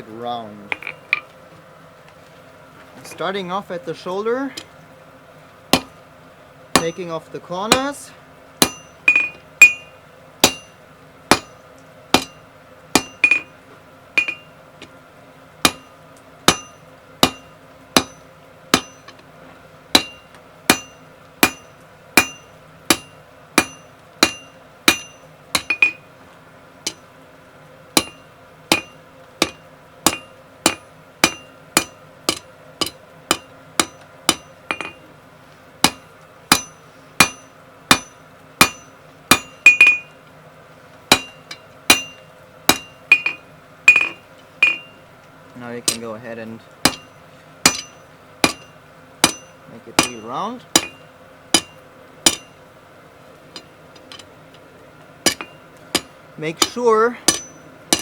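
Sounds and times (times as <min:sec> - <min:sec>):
hammer striking steel on anvil: 0:05.7 - 0:05.9, 0:06.8 - 0:07.9, 0:08.6 - 0:13.5, 0:14.2 - 0:14.5, 0:15.6 - 0:19.2, 0:19.9 - 0:26.0, 0:26.9 - 0:27.1, 0:28.0 - 0:35.0, 0:35.8 - 0:40.2, 0:41.1 - 0:45.0, 0:45.8 - 0:46.1, 0:46.8 - 0:52.6, 0:55.2 - 0:58.0.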